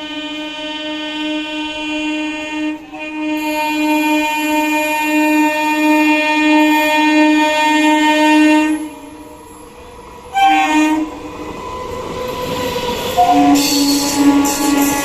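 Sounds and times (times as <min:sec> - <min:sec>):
train horn blasts: 0:00.0 - 0:09.2, 0:10.3 - 0:11.2, 0:13.1 - 0:15.0
train running noise: 0:00.0 - 0:15.0.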